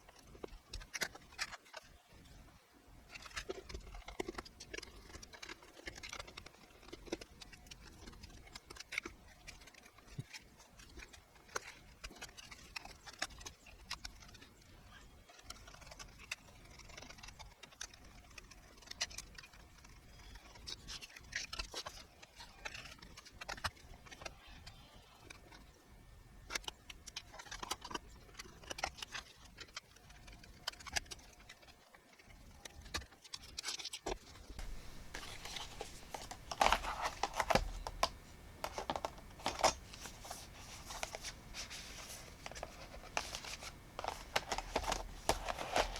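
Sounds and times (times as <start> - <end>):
hands handling computer parts: 33.4 - 45.9.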